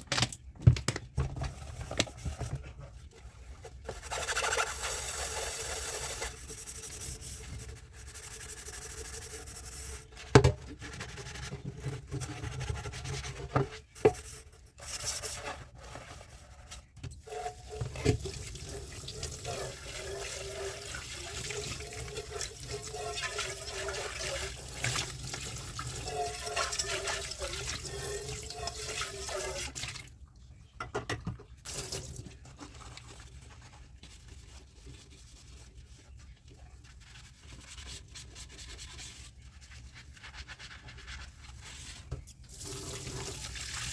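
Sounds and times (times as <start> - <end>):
tap water running into sink: 17.3 - 30.0, 31.7 - 32.3.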